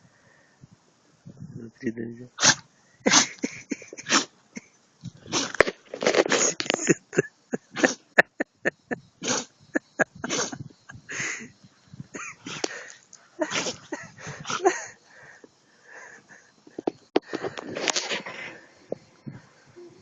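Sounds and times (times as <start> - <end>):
dog sneezing: 2.4 - 4.7, 5.3 - 6.6, 7.7 - 8.1, 9.2 - 9.5, 10.2 - 10.6, 12.4 - 12.7, 13.4 - 14.7.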